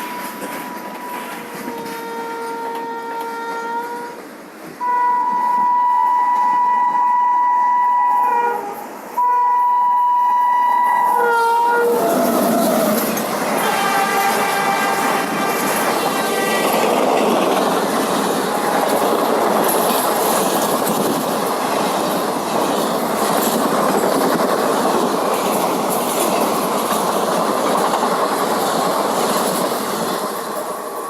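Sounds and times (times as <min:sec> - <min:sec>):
train rushing past: 0:00.0 - 0:31.0
wheels clacking over rail joints: 0:11.6 - 0:31.0.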